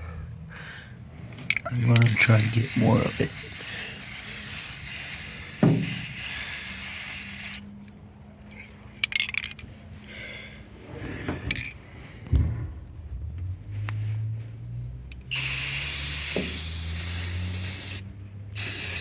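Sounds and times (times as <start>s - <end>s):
spray paint can hissing: 1.5s - 7.6s, 15.3s - 19.0s.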